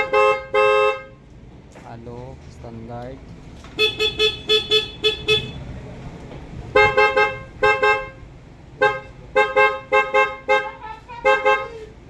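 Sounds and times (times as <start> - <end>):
motorcycle electric horn toots: 0.0 - 1.2, 3.8 - 5.6, 6.7 - 8.2, 8.8 - 11.9.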